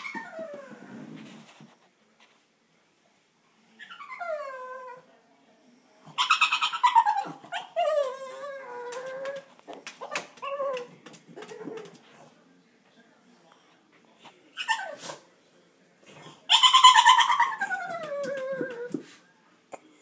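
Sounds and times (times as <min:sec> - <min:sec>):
dog whining: 0:06.2 - 0:10.9, 0:16.5 - 0:19.0.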